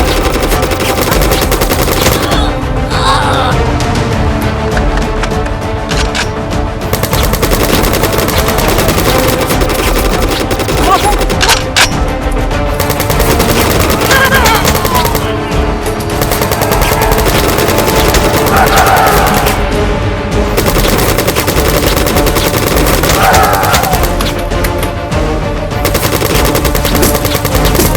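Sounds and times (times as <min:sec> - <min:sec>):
automatic gunfire: 0:00.0 - 0:02.4, 0:06.9 - 0:11.5, 0:12.8 - 0:15.4, 0:16.2 - 0:19.6, 0:20.6 - 0:24.3, 0:25.8 - 0:27.9
background music: 0:00.0 - 0:27.9.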